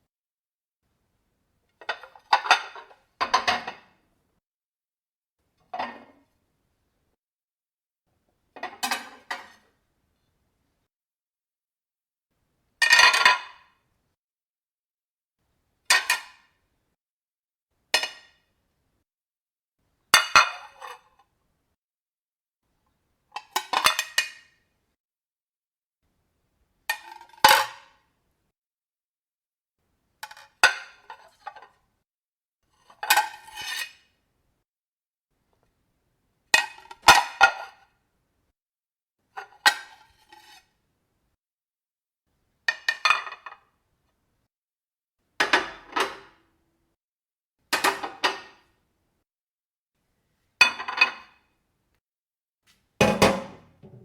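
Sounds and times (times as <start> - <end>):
dishes clinking and clattering: 53.0 - 54.0.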